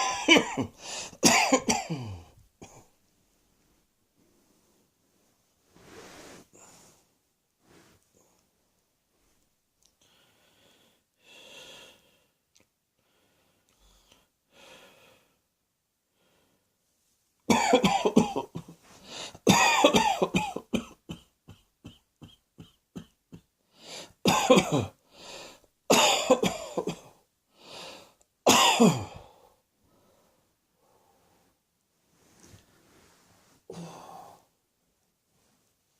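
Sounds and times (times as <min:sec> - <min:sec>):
person coughing: 0:00.0 - 0:02.9, 0:17.5 - 0:23.5, 0:24.3 - 0:25.0, 0:25.9 - 0:27.1, 0:28.5 - 0:29.3
person breathing in: 0:00.8 - 0:01.2, 0:19.0 - 0:19.4, 0:23.8 - 0:24.2.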